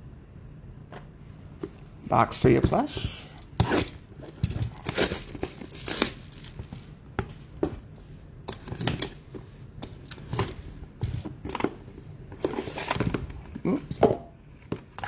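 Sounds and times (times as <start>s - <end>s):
packaging crinkling and tearing: 3.6s - 7.0s.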